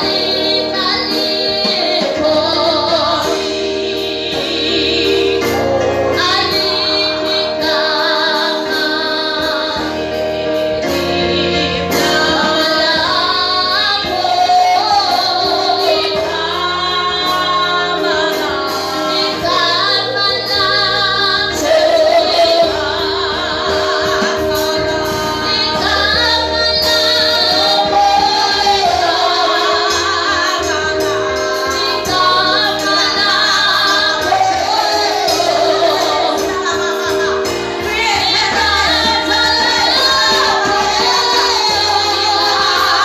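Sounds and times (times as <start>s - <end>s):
keyboard chords: 0.0s - 43.0s
woman singing gospel: 0.0s - 43.0s.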